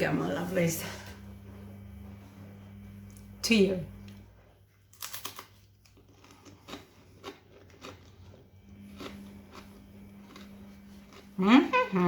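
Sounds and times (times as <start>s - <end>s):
person chewing food: 4.4s - 11.4s.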